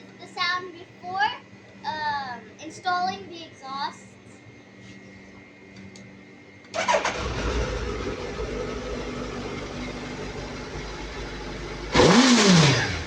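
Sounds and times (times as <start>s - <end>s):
motorcycle engine idling: 6.9s - 13.0s.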